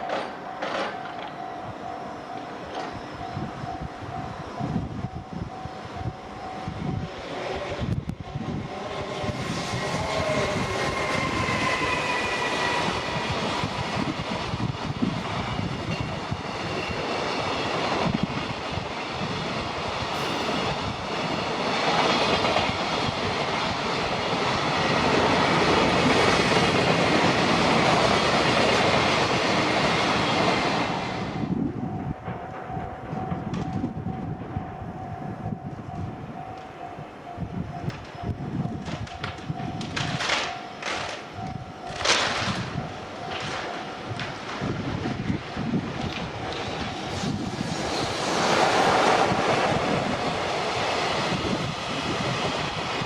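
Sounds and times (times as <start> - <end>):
freight train wheels clattering: 0.0 - 4.9, 20.1 - 53.0.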